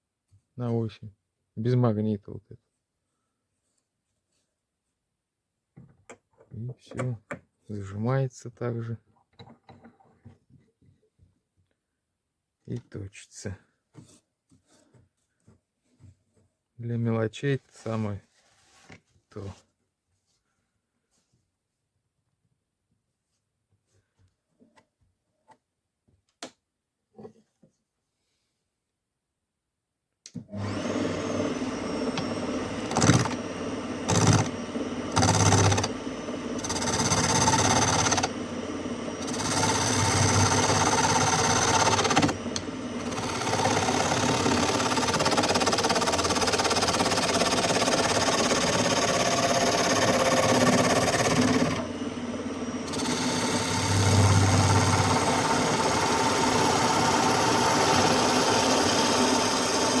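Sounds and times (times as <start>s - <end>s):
chisel cutting wood: 30.6s - 60.0s
wood lathe running: 30.6s - 60.0s.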